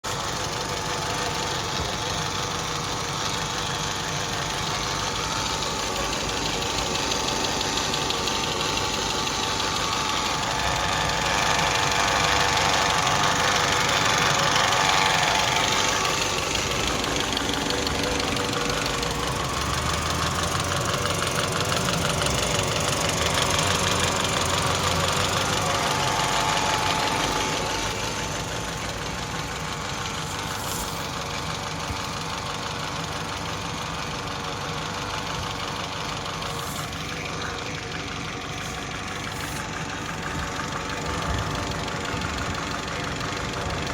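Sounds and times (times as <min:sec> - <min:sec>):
car engine running: 0:00.0 - 0:43.9
engine knocking noise: 0:00.0 - 0:43.9.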